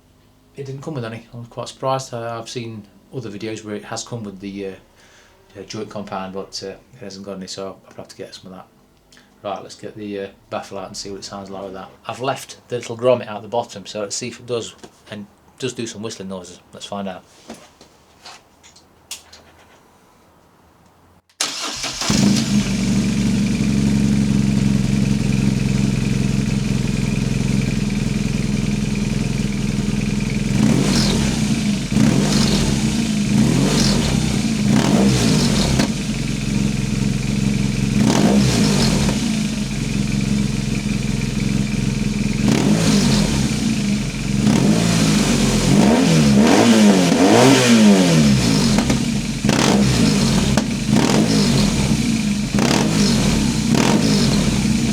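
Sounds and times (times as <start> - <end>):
motorcycle engine starting and idling: 21.4 - 54.9
motorcycle throttle blips: 21.5 - 54.9.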